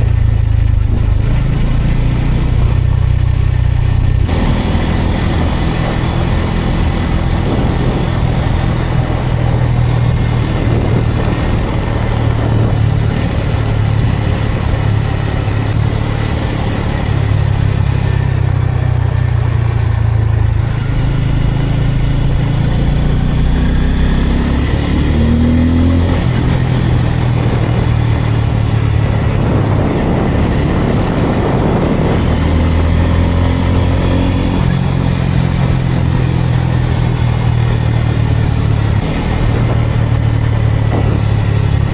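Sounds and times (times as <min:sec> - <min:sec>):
motorcycle engine running: 0:00.0 - 0:41.9
rushing wind and road noise: 0:00.0 - 0:41.9.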